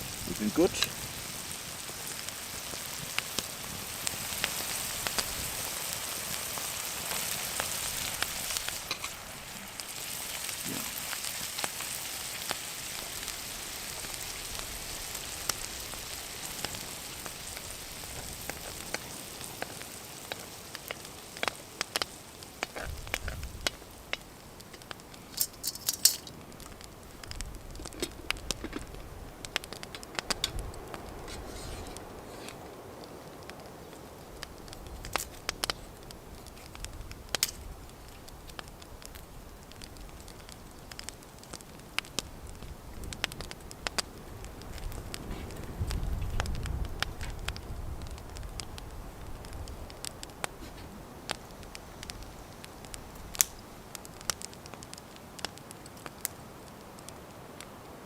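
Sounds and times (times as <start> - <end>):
bacon sizzling in a skillet: 0.0 - 32.6
fat popping and crackling: 0.0 - 58.0.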